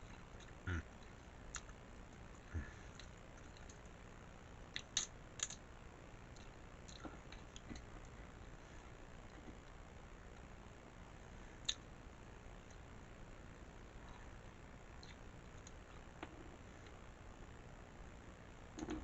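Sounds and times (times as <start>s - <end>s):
quiet chewing: 0.0s - 4.0s, 6.3s - 8.2s, 15.0s - 16.1s.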